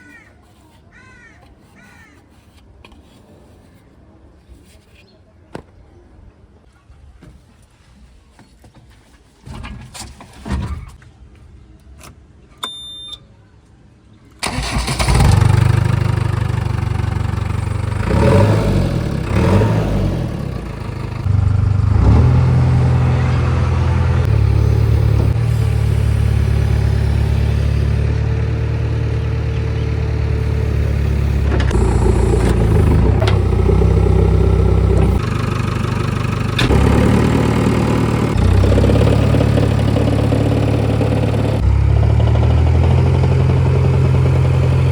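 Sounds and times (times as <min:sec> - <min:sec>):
short beep: 0:12.6 - 0:13.2
diesel engine running: 0:14.4 - 0:44.9.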